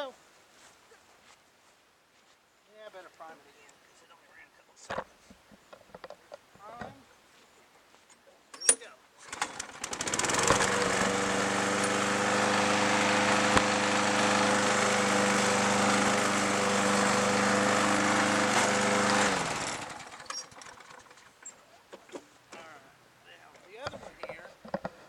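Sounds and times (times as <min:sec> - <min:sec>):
lawn mower engine running: 0:09.2 - 0:21.5.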